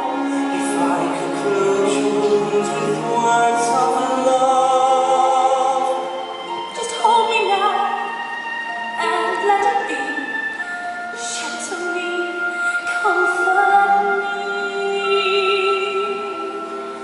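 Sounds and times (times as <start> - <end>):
operatic singing voice: 0.0 - 8.2
orchestral accompaniment: 0.0 - 17.0.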